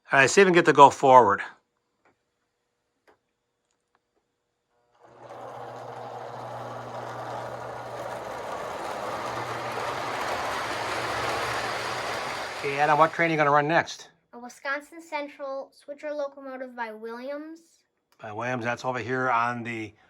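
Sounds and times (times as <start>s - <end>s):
toy train motor humming: 4.8s - 13.6s
toy train wheels rumbling on track: 5.0s - 13.8s.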